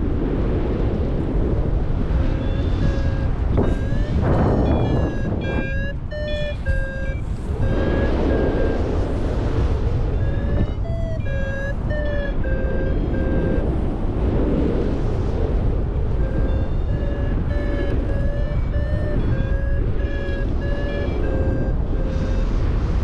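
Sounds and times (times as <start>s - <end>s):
wind noise on microphone: 0.0s - 23.0s
variometer beeping: 2.2s - 13.9s, 16.1s - 22.7s.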